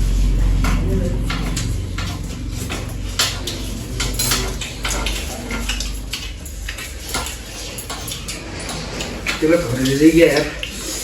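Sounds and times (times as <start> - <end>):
steady low hum: 0.0 - 11.0
cutlery clinking on a plate: 0.7 - 9.4.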